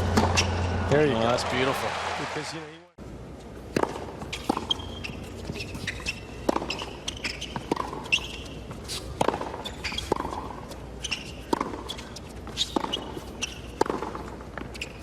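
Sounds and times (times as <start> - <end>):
tennis ball hitting racket: 0.0 - 0.8, 3.7 - 15.0
shoes squeaking: 0.1 - 0.7, 3.8 - 15.0
ball bouncing on court: 3.7 - 8.5, 9.2 - 10.5, 12.6 - 14.3.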